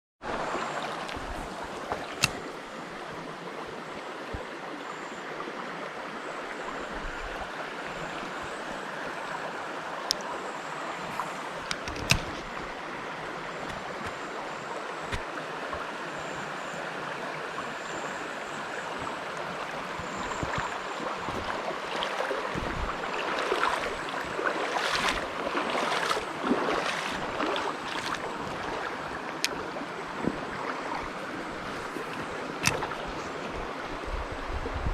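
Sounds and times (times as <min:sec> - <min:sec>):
stream water rushing: 0:00.2 - 0:34.8
sharp clicks: 0:11.6 - 0:12.5.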